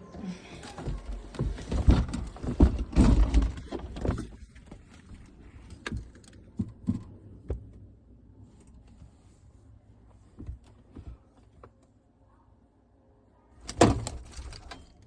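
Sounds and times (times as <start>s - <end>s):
handling knocks and thumps: 0.5s - 7.9s, 10.1s - 11.8s, 13.6s - 15.0s.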